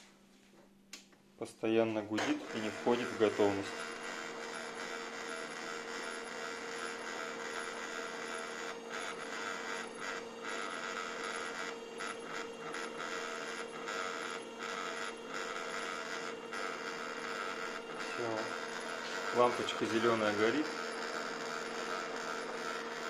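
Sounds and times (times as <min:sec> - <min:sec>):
laser printer mechanical whirr: 0:01.9 - 0:23.0.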